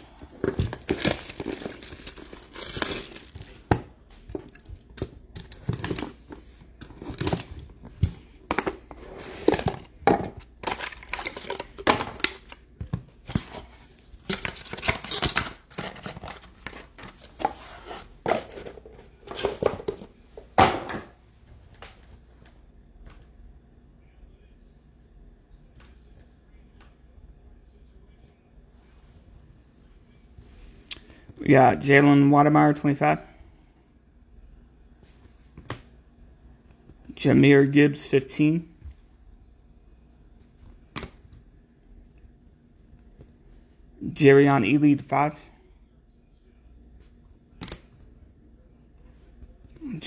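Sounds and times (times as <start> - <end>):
card pack wrappers crinkling: 0.0 - 3.7, 10.6 - 12.5.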